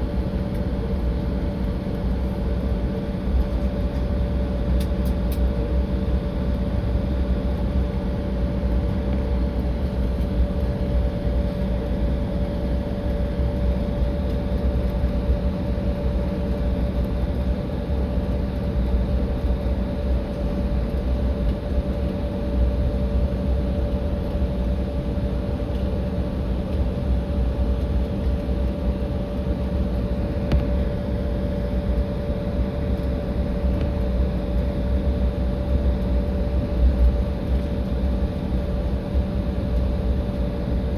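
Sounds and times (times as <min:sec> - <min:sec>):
jet engines humming in cabin: 0:00.0 - 0:40.9.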